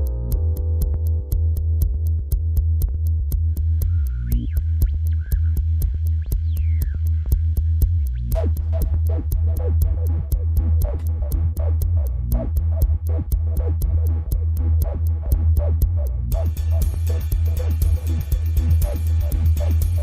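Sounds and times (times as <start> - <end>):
booming bass: 0.0 - 20.0
electronic dance music: 8.3 - 20.0.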